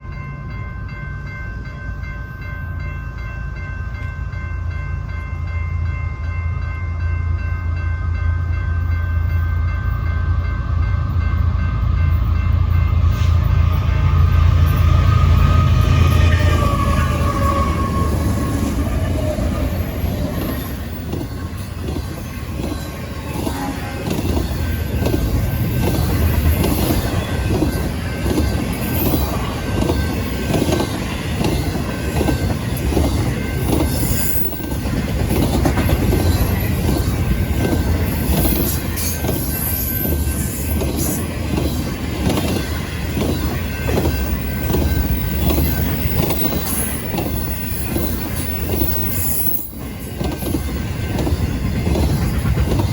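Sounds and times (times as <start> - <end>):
train wheels rumbling on rail: 3.6 - 52.9.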